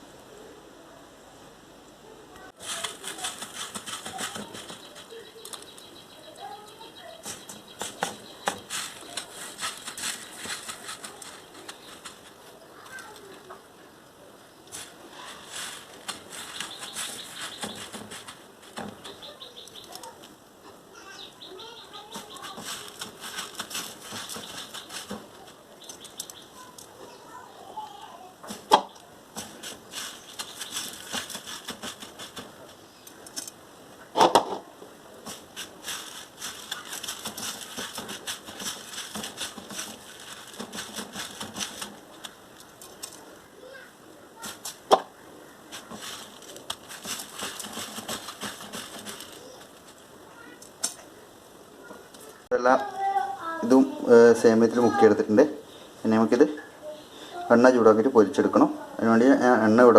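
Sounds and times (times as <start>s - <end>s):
dry vermicelli rustling and crackling: 2.3s - 13.7s, 14.6s - 33.7s, 35.1s - 51.1s.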